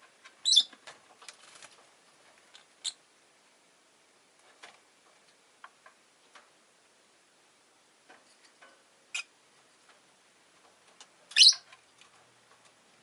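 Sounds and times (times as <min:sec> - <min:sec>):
bird giving high chirps: 0:00.4 - 0:00.7, 0:11.3 - 0:11.6.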